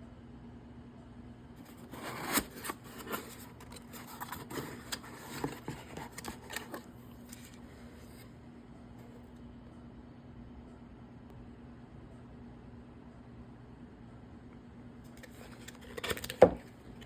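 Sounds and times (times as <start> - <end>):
faint steady hum: 0.0 - 17.0
packaging rustling and clicking: 1.6 - 7.6.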